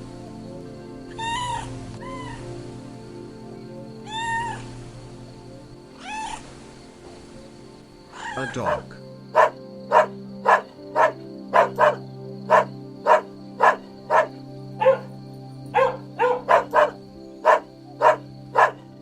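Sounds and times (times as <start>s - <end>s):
dog barking: 8.2s - 15.1s, 15.8s - 18.9s.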